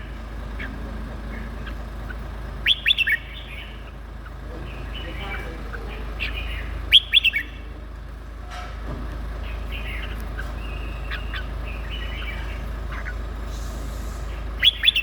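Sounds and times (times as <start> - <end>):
bulbuls chirping and whistling: 0.0 - 8.1, 9.2 - 15.0
steady low hum: 0.0 - 15.0.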